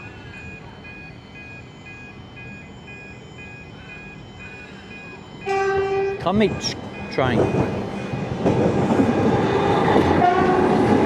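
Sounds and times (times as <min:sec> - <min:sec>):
electronic two-tone beeping: 0:00.0 - 0:09.5
train horn: 0:05.4 - 0:06.2, 0:09.6 - 0:11.0.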